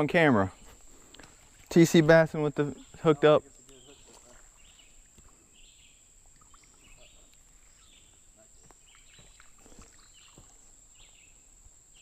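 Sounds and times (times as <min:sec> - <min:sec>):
insects buzzing: 0:00.0 - 0:12.0
short insect chirps: 0:02.7 - 0:12.0.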